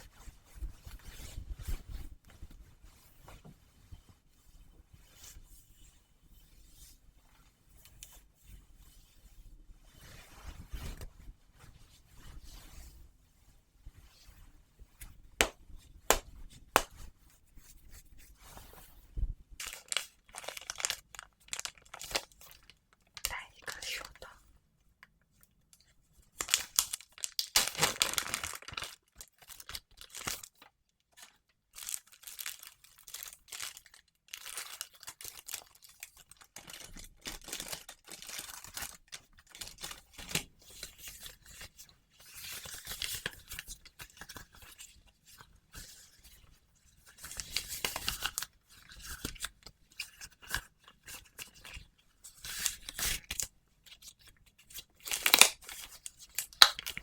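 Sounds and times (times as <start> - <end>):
latex gloves crackling: 15.4 - 17.0.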